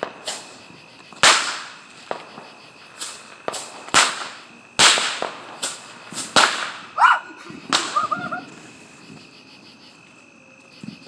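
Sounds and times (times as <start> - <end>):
fireworks bangs: 0.0 - 8.8.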